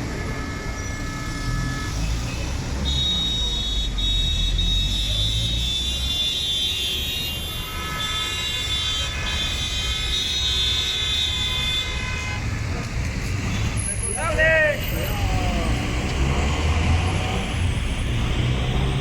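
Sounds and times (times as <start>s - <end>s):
vehicles passing: 0.0s - 7.7s, 8.5s - 19.0s.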